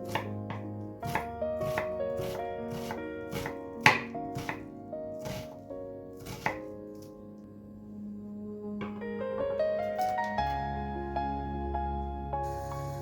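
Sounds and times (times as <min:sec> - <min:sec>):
knife chopping on cutting board: 0:00.0 - 0:04.6, 0:05.2 - 0:05.6, 0:06.2 - 0:06.7
soft piano music: 0:00.0 - 0:13.0.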